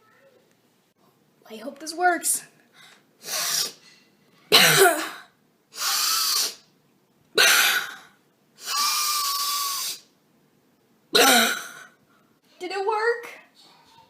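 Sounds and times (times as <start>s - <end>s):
man hiccupping: 5.8s - 6.6s, 7.4s - 10.1s, 11.2s - 11.9s.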